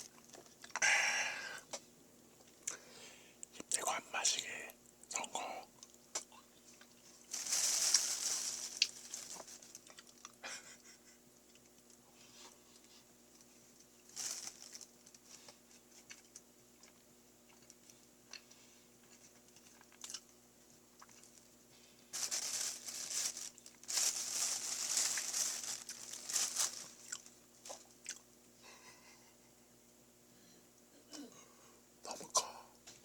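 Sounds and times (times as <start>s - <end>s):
crunching and crinkling: 5.8s - 10.4s, 11.5s - 20.3s, 21.0s - 21.5s, 22.1s - 28.2s
chewing and biting: 15.5s - 20.4s.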